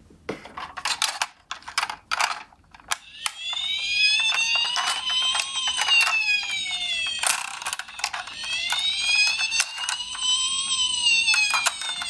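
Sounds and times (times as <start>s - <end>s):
plastic clicks and clatter: 0.4s - 10.2s, 11.2s - 12.0s
toy ambulance siren wailing: 2.9s - 12.0s.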